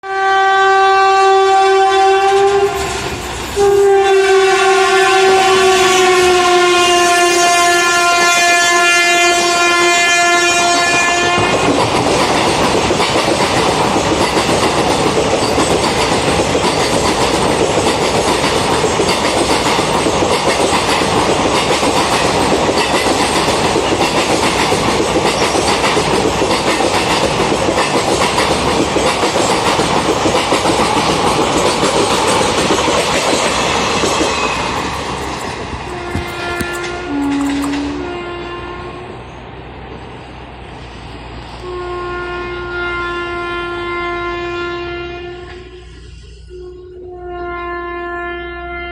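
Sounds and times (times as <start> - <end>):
locomotive horn blasts: 0.0 - 11.7, 35.9 - 39.2, 41.6 - 48.9
train wheels clattering on rails: 1.5 - 6.0, 10.4 - 38.1.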